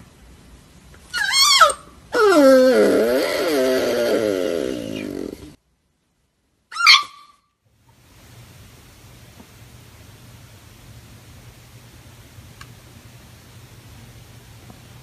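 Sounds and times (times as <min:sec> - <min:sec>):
pet wailing: 0:01.1 - 0:05.6, 0:06.7 - 0:07.3.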